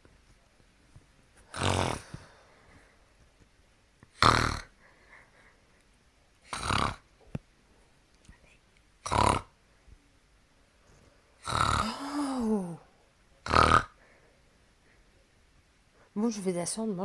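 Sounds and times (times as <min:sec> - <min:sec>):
person snoring loudly: 0:01.5 - 0:02.2, 0:04.2 - 0:04.7, 0:06.5 - 0:07.0, 0:09.0 - 0:09.5, 0:11.4 - 0:12.8, 0:13.4 - 0:14.0.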